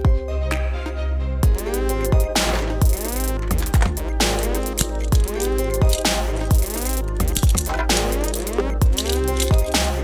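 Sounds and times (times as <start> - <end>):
electronic dance music: 1.4 - 10.0.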